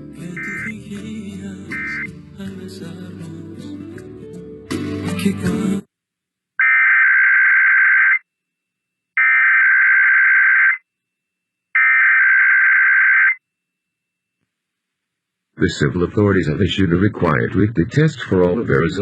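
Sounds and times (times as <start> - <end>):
broadcast audio: 0.0 - 4.0, 15.5 - 19.0.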